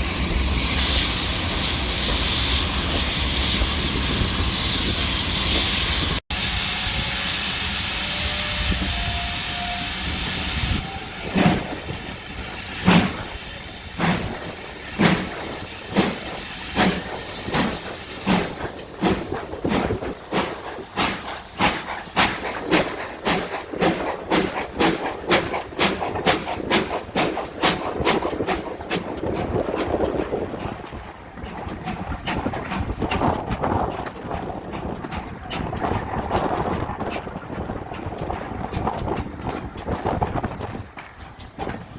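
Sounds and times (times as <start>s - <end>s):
steam hissing: 0.0s - 28.5s
steam locomotive exhaust beats: 0.0s - 41.9s.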